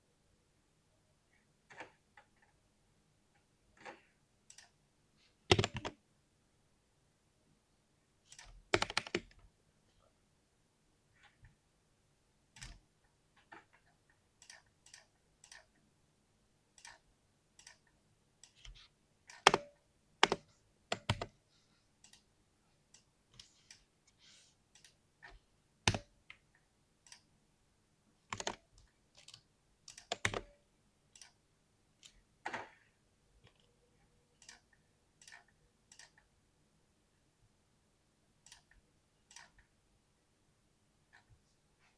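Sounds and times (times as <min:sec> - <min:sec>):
mechanical keyboard clicks: 0:05.5 - 0:06.0, 0:08.3 - 0:09.4, 0:28.3 - 0:28.6, 0:29.2 - 0:30.5.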